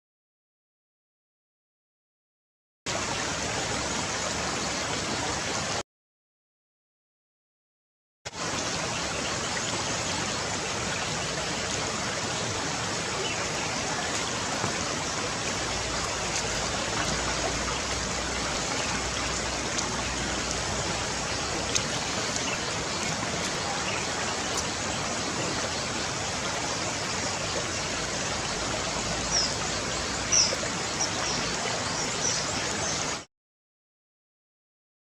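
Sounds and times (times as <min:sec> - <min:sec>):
flowing water rushing: 0:02.9 - 0:05.8, 0:08.3 - 0:33.3.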